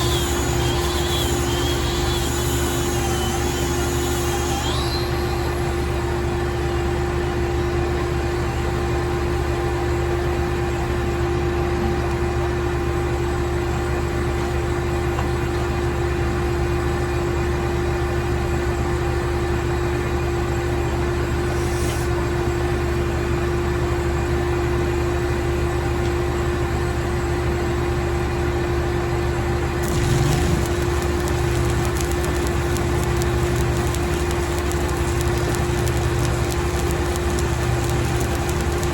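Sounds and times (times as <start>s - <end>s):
welding arc crackling: 0.0s - 4.9s, 29.8s - 38.9s
engine hum: 29.8s - 38.9s.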